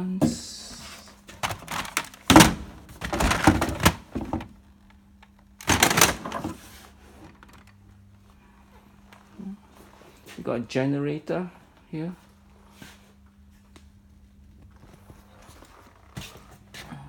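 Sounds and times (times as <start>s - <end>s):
hard objects clattering: 1.3s - 4.6s, 5.6s - 6.7s.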